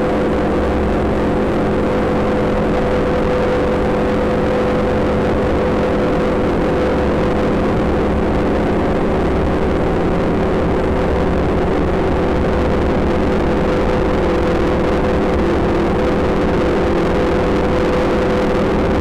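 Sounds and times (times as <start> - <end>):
synthesizer noise drone: 0.0 - 19.0.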